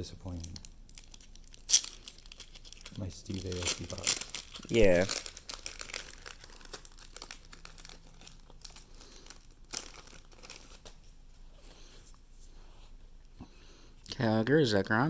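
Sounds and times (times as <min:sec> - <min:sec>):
foil wrapper crinkling: 0:00.0 - 0:11.1
cards rustling: 0:00.2 - 0:12.1.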